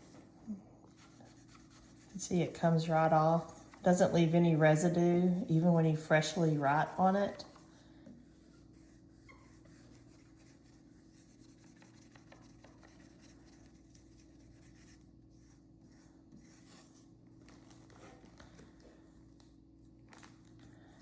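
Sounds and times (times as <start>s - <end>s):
steady low hum: 0.0s - 21.0s
marker scratching on whiteboard: 1.0s - 4.1s, 8.7s - 17.0s.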